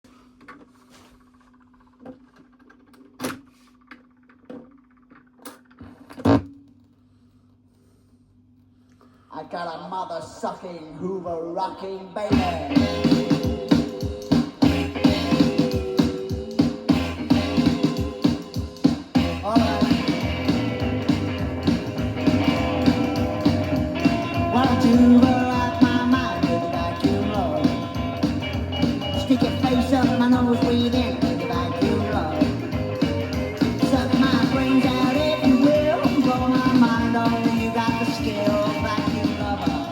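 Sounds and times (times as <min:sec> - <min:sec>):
person singing: 0:10.4 - 0:39.9
rock band playing: 0:12.4 - 0:39.9
sliding rising guitar notes: 0:19.2 - 0:39.9.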